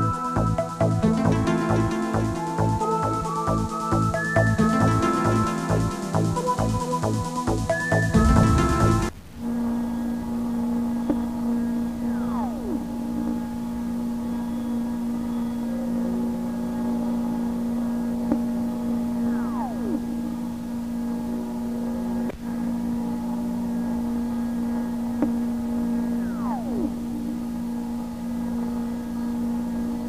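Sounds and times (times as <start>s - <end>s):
low drone with overtones: 0.0s - 30.0s
falling whistle-like tone: 2.1s - 5.5s, 7.6s - 9.1s.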